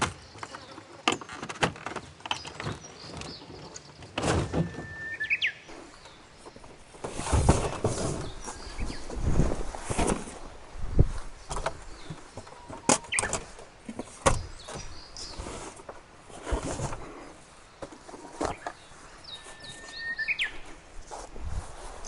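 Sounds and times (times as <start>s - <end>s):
handling knocks and clicks: 0.0s - 4.4s
bird chirping: 2.3s - 6.7s, 11.4s - 13.6s, 18.5s - 20.8s.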